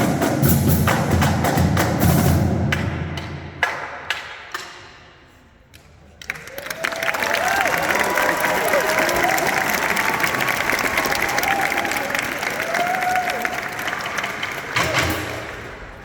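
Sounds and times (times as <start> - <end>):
drumline drumming: 0.0 - 4.8, 8.7 - 16.0
audience cheering and applauding: 6.2 - 16.0.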